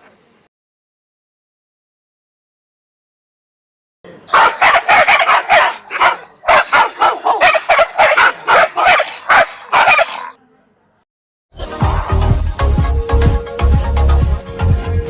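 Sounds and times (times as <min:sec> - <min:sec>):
dog barking rapidly: 0:04.3 - 0:10.4.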